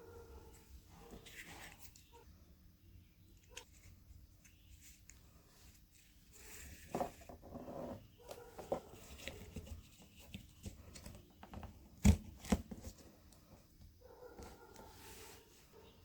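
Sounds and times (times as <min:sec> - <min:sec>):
cardboard rustling and scraping: 0:00.5 - 0:02.1, 0:05.6 - 0:15.8.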